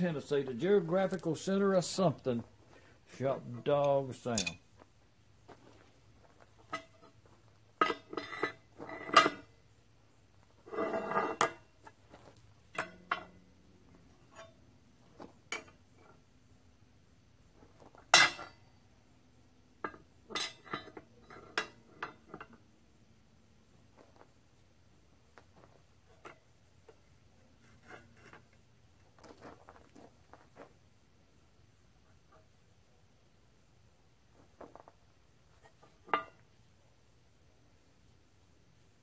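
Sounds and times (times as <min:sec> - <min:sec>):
steel parts clanking on metal table: 0:04.3 - 0:04.6.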